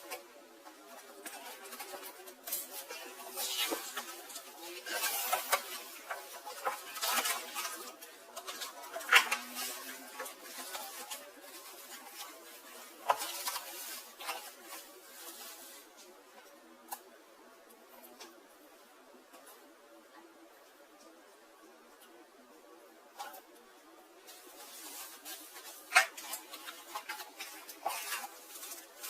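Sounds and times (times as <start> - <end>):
packaging rustling and crinkling: 0.8 - 16.0, 24.2 - 29.0.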